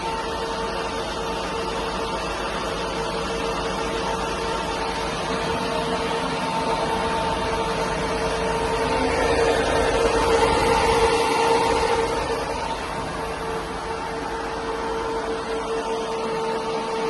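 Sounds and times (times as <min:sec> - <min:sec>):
constant mechanical whine: 0:00.0 - 0:17.0
diesel van idling: 0:02.9 - 0:16.4.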